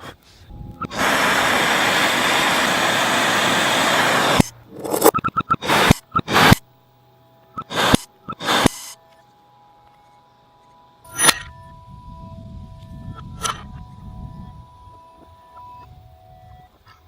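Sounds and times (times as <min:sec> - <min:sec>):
reversed harsh scraping: 0:03.7 - 0:06.6.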